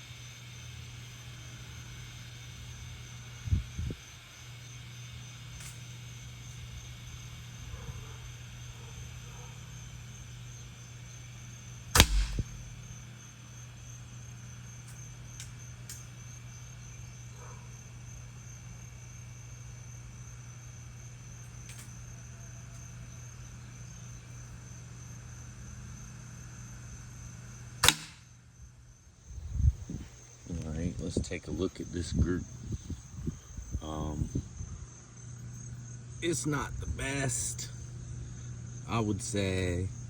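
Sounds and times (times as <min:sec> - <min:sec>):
faint high insect-like whine: 0:00.0 - 0:40.0
steady low hum: 0:09.9 - 0:13.2, 0:27.4 - 0:40.0
air rifle shot crack: 0:12.0 - 0:12.8, 0:27.8 - 0:28.2.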